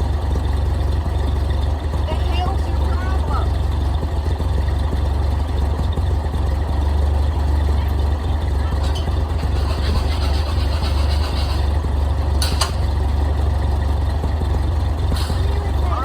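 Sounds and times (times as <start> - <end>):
tractor engine idling: 0.0 - 16.0.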